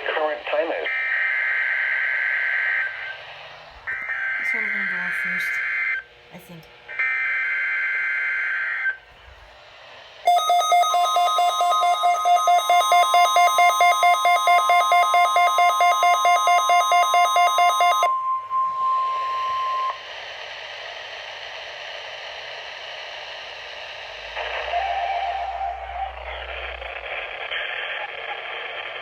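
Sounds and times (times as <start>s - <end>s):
radio static hiss: 0.0s - 1.1s, 2.5s - 6.7s, 25.9s - 29.0s
steady warning tone: 3.9s - 6.7s, 10.3s - 20.0s, 24.1s - 27.3s
alarm beeping rapidly: 10.3s - 20.0s.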